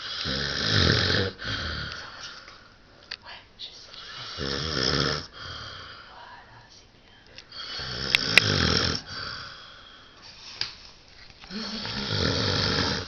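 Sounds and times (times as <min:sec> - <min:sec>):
man snoring: 0:00.0 - 0:02.0, 0:04.2 - 0:05.9, 0:07.6 - 0:09.7, 0:11.5 - 0:13.0.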